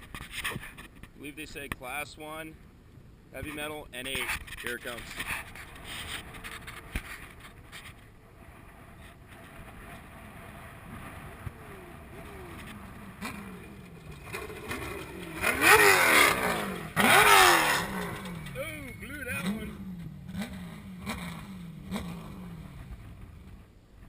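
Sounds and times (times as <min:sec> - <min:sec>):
race car engine revving: 0:09.7 - 0:23.6.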